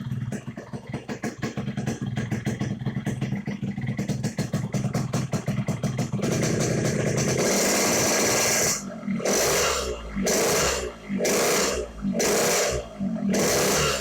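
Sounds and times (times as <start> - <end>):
two-stroke motorcycle engine revving: 0.0 - 14.0.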